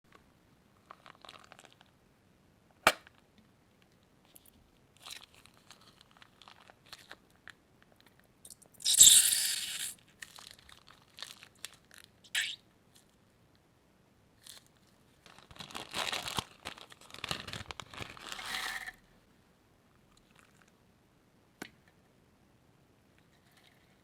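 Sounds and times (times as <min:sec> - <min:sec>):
plastic bags crinkling: 0:00.9 - 0:01.9, 0:10.3 - 0:12.0, 0:15.2 - 0:18.7.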